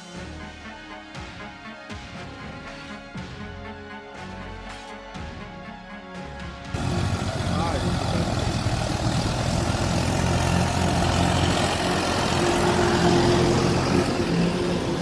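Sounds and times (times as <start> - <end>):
engine humming: 6.8 - 15.0.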